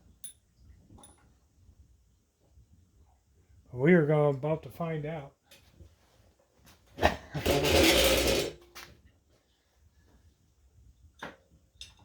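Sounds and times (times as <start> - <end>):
rough scraping: 7.0 - 8.6.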